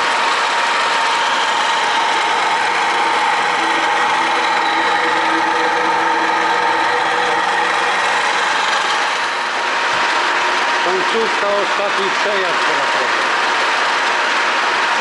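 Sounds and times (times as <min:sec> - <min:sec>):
milling machine motor whine: 0:00.0 - 0:15.0.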